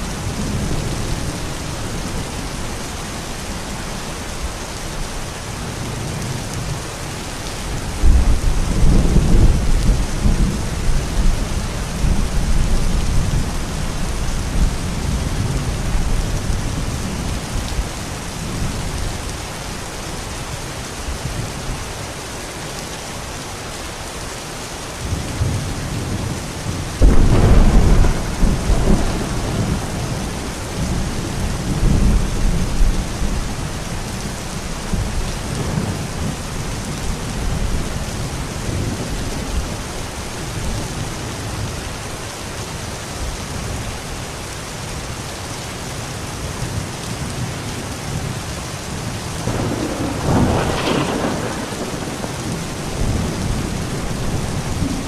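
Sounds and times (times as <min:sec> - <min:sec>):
steady rain hissing: 0:00.0 - 0:55.0
thunder rumbling and cracking: 0:07.8 - 0:17.8, 0:25.1 - 0:39.8, 0:49.1 - 0:55.0.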